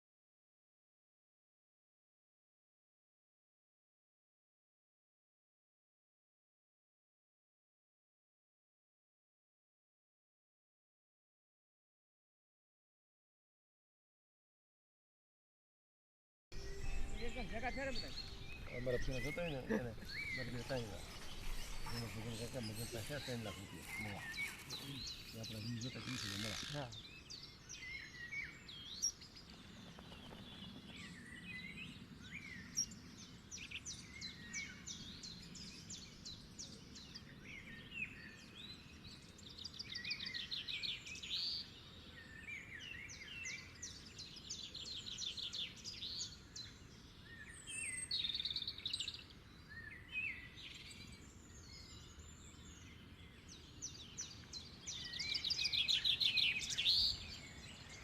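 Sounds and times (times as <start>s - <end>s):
faint outdoor background noise: 16.5s - 58.0s
birds chirping and trilling: 16.6s - 58.0s.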